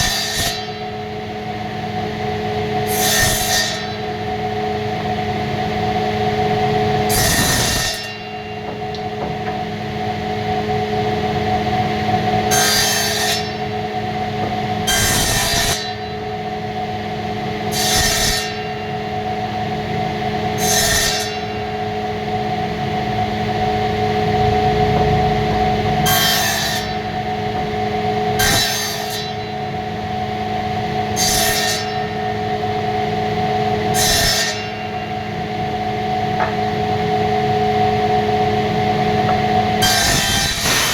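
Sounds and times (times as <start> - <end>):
woodworking machine hum: 0.0 - 40.9
rasping cut on wood: 39.8 - 40.9.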